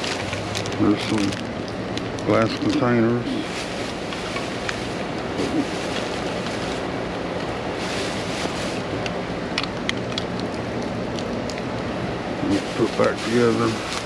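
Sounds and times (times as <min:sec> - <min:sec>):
heavy rain hissing: 0:02.3 - 0:09.0, 0:12.2 - 0:14.0.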